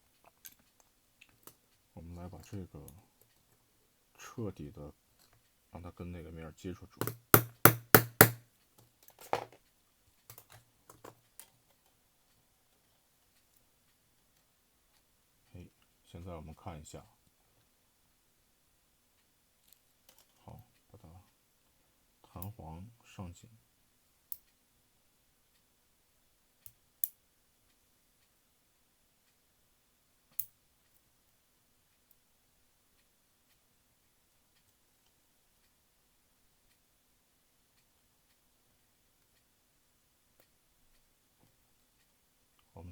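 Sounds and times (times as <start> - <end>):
small sharp clicks of tools: 7.0 - 9.3, 10.2 - 12.4, 24.3 - 24.6, 26.6 - 27.2, 30.3 - 31.0.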